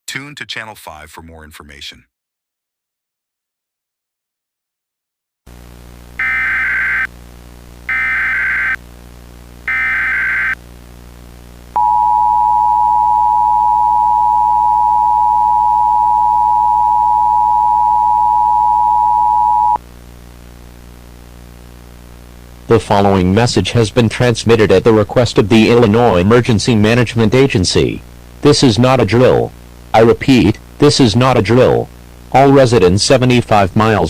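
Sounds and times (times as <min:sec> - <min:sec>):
faint steady hum: 0:05.5 - 0:34.0
digital data tone bursts: 0:06.2 - 0:07.1, 0:07.9 - 0:08.8, 0:09.7 - 0:10.6
two-tone attention signal: 0:11.8 - 0:19.8.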